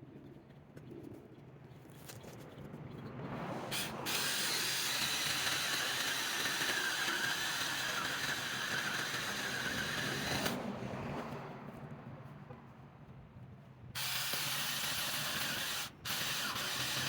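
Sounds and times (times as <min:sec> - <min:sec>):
mini chainsaw running: 0:03.7 - 0:10.6, 0:14.0 - 0:17.0.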